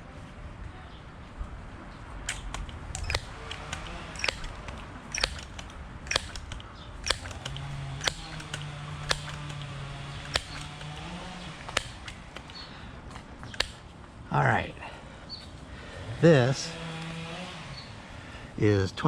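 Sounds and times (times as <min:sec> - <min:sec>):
bird chip calls: 0:02.4 - 0:13.8.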